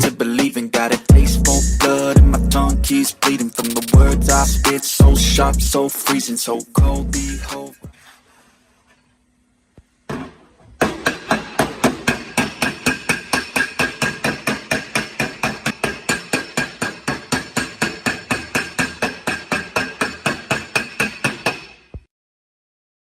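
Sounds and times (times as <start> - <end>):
hammer beating metal panel: 10.1 - 21.8.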